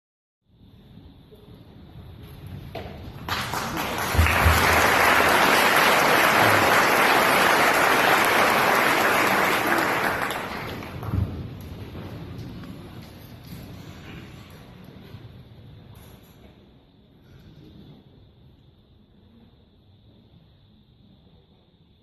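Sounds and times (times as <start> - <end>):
audience applauding: 3.2 - 11.3.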